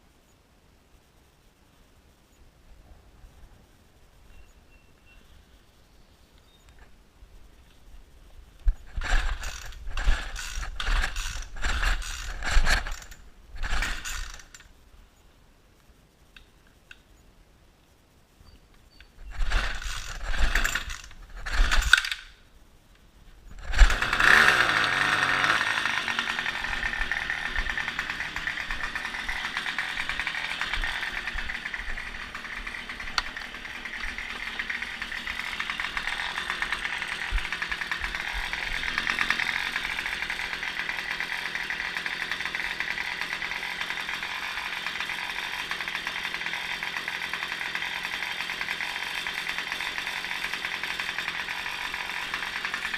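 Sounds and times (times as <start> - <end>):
recoil starter pulls: 8.7 - 14.7, 19.2 - 22.3, 23.5 - 52.9
string trimmer engine buzzing: 8.8 - 14.7, 19.3 - 22.2, 23.5 - 52.9.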